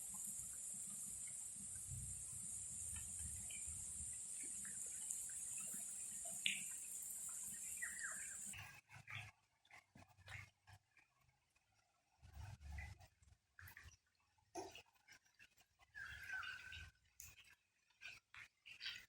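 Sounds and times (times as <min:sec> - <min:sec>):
high-pitched insect drone: 0:00.0 - 0:08.5.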